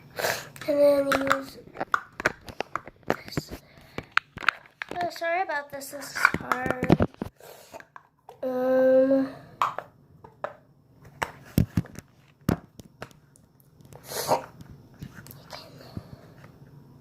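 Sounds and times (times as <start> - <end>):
breathy puff: 0.1 - 0.6, 14.0 - 14.5
girl humming: 8.4 - 9.5.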